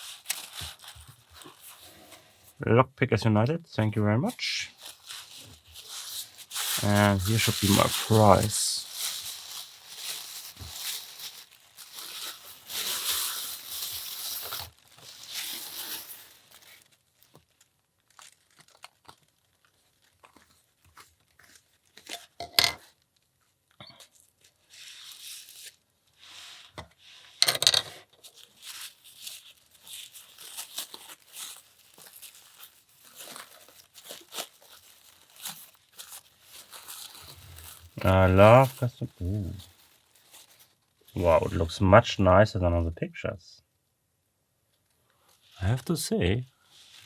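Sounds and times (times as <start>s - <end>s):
packaging tearing and crinkling: 0.0s - 2.5s, 4.4s - 27.4s, 28.0s - 41.6s
packaging rustling: 0.0s - 2.6s, 4.4s - 27.4s, 28.0s - 41.8s.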